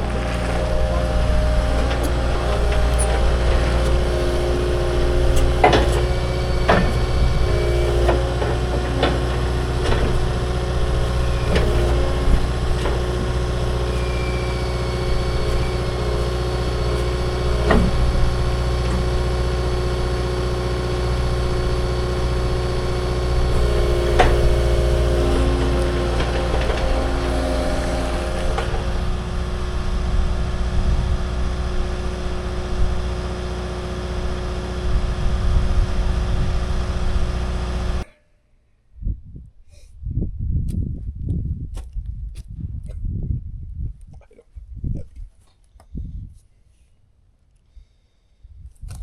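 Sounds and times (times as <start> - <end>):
engine idling: 0.0 - 38.0.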